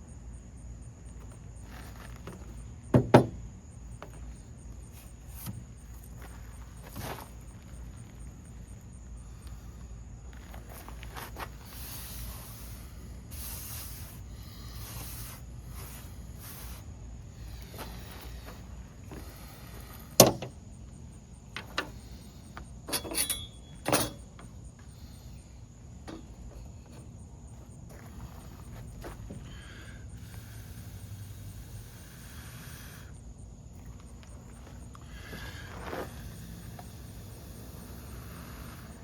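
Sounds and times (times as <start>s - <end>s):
insects trilling: 0.0s - 39.0s
sharp wooden knocks and clicks: 3.0s - 3.4s
hand drill rasping swishes: 10.4s - 20.2s.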